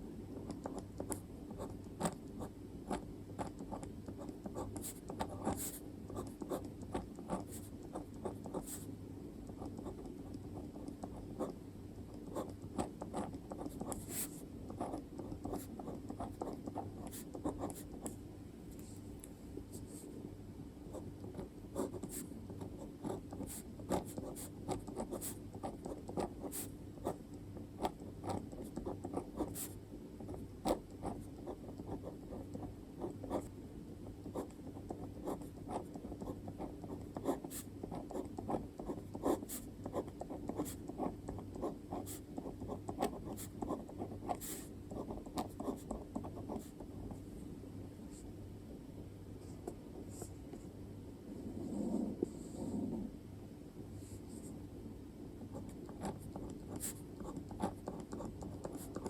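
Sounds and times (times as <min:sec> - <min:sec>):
faint steady hum: 0:00.0 - 0:59.0
pen scratching on paper: 0:00.4 - 0:18.2, 0:20.9 - 0:33.5, 0:34.2 - 0:47.2, 0:55.5 - 0:59.0.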